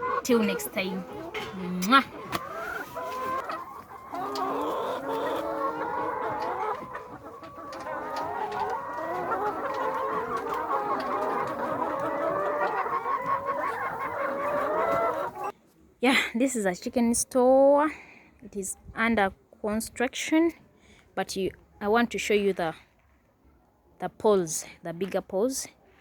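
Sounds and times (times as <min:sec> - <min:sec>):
hens clucking and calling: 0:00.0 - 0:15.6.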